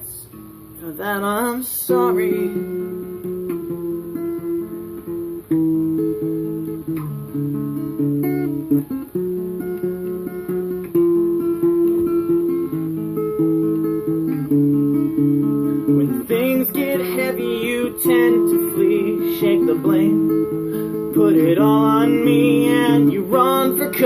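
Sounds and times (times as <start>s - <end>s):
acoustic guitar playing: 0.0s - 24.0s.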